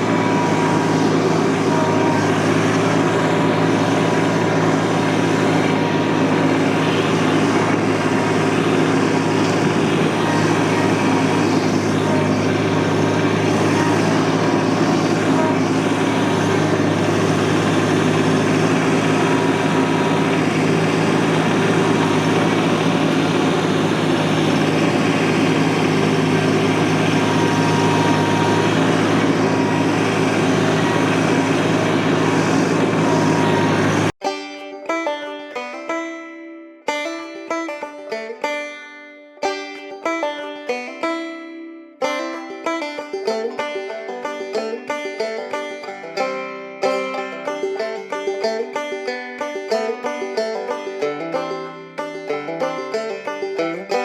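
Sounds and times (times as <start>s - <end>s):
engine running steadily: 0.0s - 34.2s.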